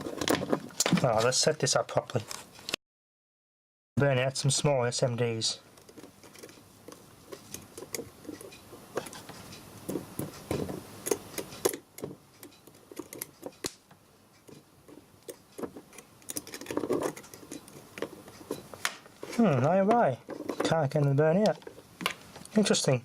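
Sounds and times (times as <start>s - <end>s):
light handling noise: 14.4s - 22.6s.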